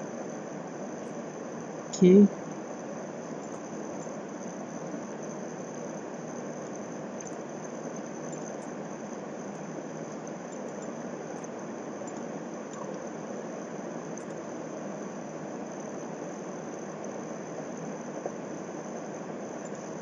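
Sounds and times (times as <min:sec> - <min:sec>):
microphone hiss: 0:00.0 - 0:02.4.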